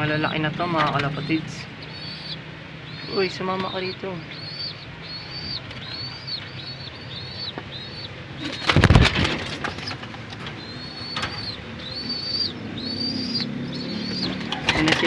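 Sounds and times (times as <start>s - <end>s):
squabs peeping: 0.7s - 15.0s
pigeon cooing: 0.9s - 15.0s
loud rustling: 7.6s - 12.4s.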